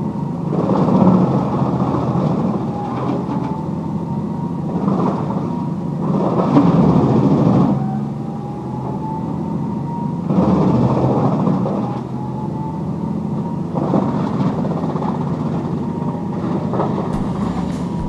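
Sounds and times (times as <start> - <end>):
heavy machinery humming: 17.1 - 18.0.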